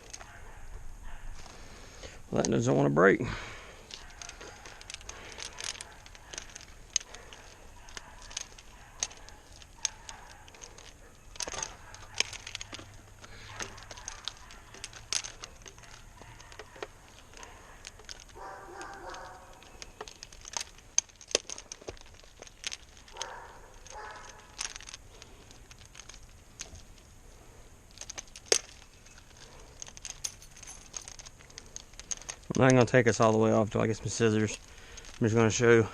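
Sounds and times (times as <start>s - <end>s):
plastic packaging crinkling: 3.6s - 35.9s
plastic clicks and snaps: 3.9s - 27.1s.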